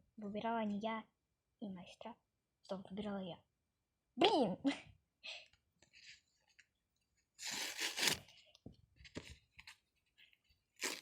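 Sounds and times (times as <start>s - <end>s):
paper tearing and crinkling: 7.4s - 8.3s, 10.8s - 11.0s.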